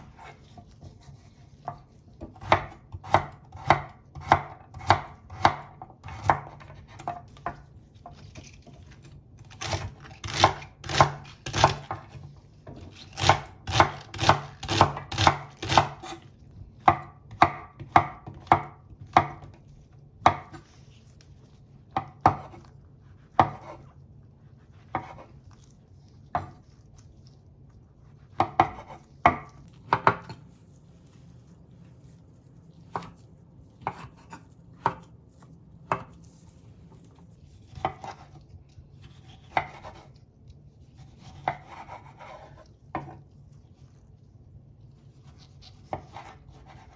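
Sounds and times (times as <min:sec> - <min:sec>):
knife chopping on cutting board: 0:00.0 - 0:16.2, 0:16.8 - 0:20.8, 0:21.9 - 0:22.7, 0:23.3 - 0:23.9, 0:24.8 - 0:25.4, 0:26.2 - 0:26.7, 0:28.3 - 0:30.4, 0:32.9 - 0:35.2, 0:35.8 - 0:36.2, 0:37.6 - 0:38.4, 0:39.0 - 0:40.2, 0:41.0 - 0:43.2, 0:45.2 - 0:46.9.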